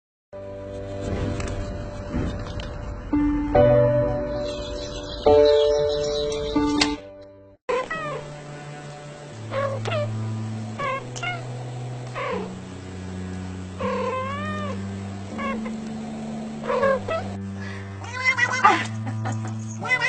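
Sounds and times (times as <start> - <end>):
background music low notes: 0.4 - 20.0
cat meowing: 7.7 - 8.2, 9.5 - 10.1, 13.8 - 15.7, 16.6 - 17.3, 18.0 - 18.9.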